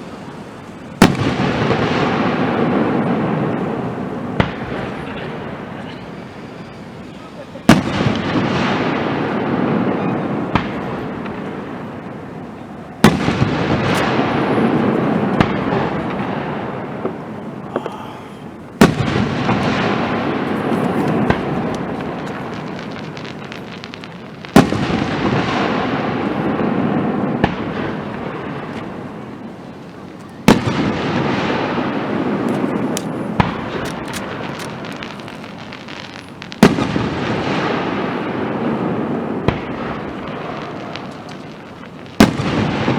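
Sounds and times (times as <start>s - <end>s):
fireworks bursting with rumble: 0.0s - 42.9s
small firework cracks: 0.0s - 42.9s.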